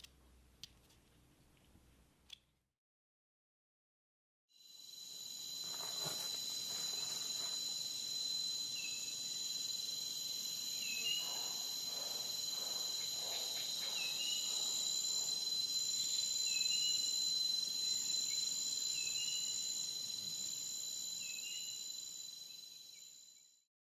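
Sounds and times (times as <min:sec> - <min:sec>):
high-pitched insect chorus: 0:04.6 - 0:23.6.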